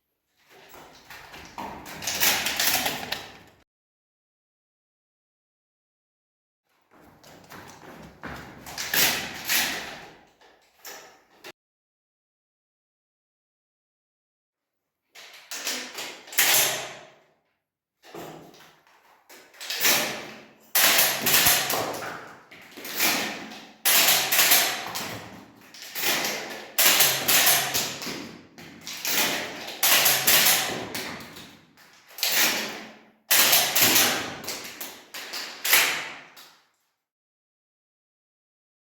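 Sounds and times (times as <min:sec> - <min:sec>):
shotgun clacks and rattles: 0:00.7 - 0:03.6, 0:07.0 - 0:10.2, 0:19.6 - 0:36.1.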